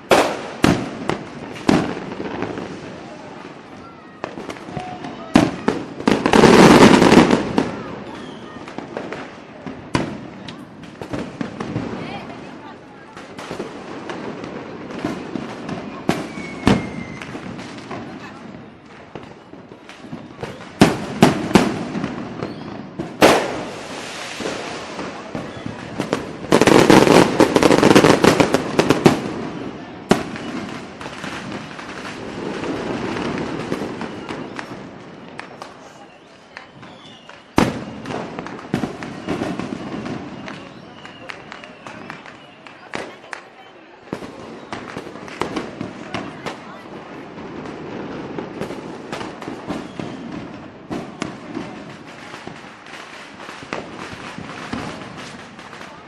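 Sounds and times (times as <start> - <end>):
firework bang: 0.0 - 3.5, 4.2 - 35.9
fireworks cracking and popping: 0.0 - 56.0.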